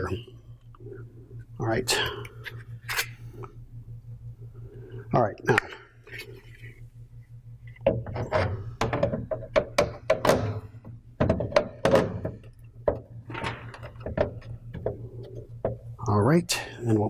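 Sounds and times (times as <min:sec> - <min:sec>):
plastic tray knocks and clunks: 0:07.8 - 0:15.0.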